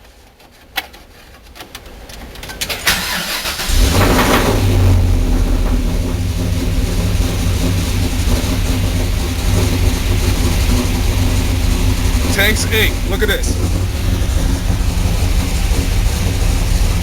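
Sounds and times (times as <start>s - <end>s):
starter clicks and cranking: 2.5s - 5.0s
engine idling: 2.6s - 17.0s.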